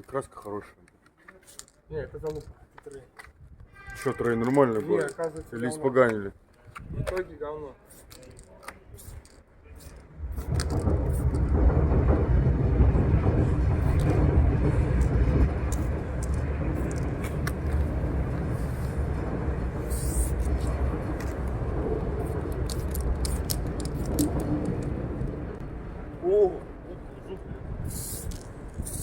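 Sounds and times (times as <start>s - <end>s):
vehicle low rumble: 8.0s - 29.0s.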